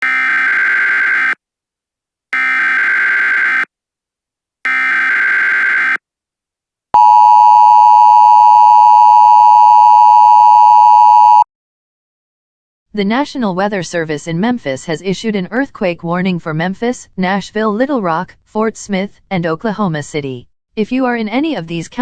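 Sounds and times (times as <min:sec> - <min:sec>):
short buzzing data bursts: 0:02.4 - 0:03.7, 0:04.7 - 0:06.0.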